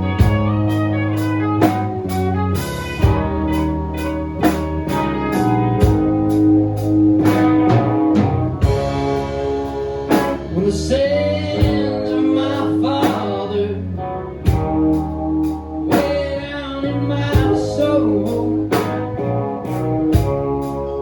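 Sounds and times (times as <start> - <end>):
bending electric guitar notes: 0.0 - 21.0
blues band playing: 0.0 - 21.0
drum hits: 7.2 - 9.3, 10.1 - 10.5.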